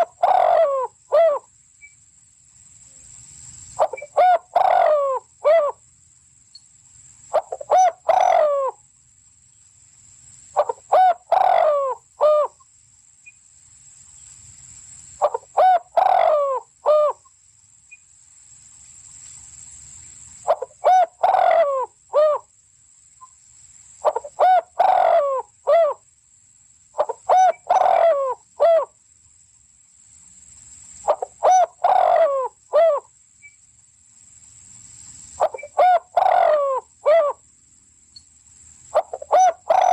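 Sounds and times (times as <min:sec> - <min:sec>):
bird calling: 0:00.0 - 0:02.0, 0:03.8 - 0:05.8, 0:07.3 - 0:08.8, 0:10.6 - 0:12.6, 0:15.2 - 0:17.3, 0:20.4 - 0:22.4, 0:24.0 - 0:26.0, 0:27.0 - 0:28.9, 0:31.0 - 0:33.6, 0:35.4 - 0:37.4, 0:38.9 - 0:39.9.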